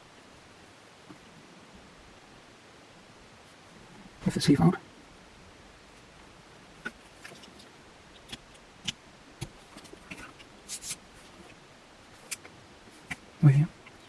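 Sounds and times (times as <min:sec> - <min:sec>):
small clicks and light scrapes: 0:06.8 - 0:14.0.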